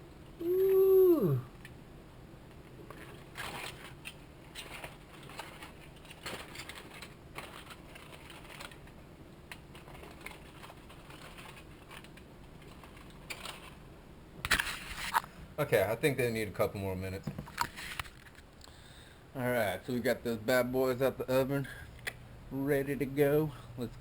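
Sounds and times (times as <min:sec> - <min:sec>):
low steady hum: 0:00.0 - 0:24.0
foil crackling and crinkling: 0:02.5 - 0:19.2.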